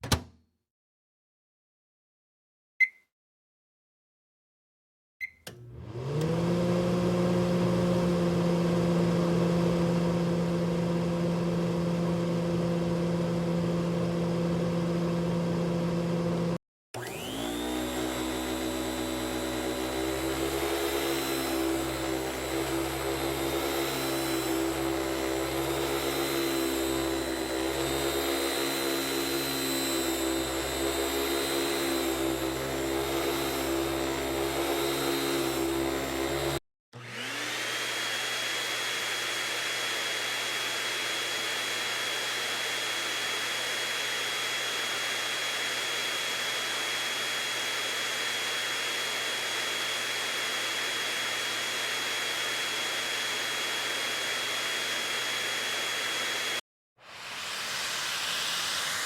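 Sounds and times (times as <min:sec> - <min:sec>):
appliance motor whirring: 0:05.5 - 0:11.9, 0:16.0 - 0:56.6
second motor with high whine: 0:05.6 - 0:59.0.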